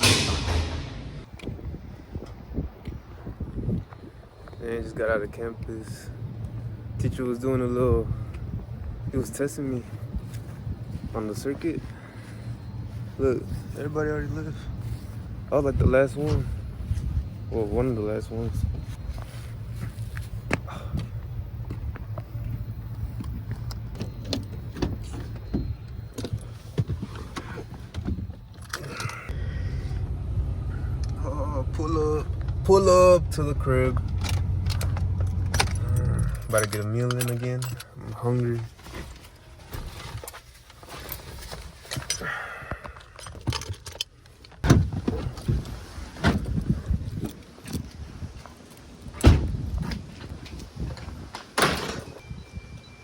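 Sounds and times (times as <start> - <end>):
heavy thumps: 0.0 - 1.3
car engine and road noise: 0.0 - 42.2, 42.9 - 53.0
keys jangling: 34.3 - 38.0.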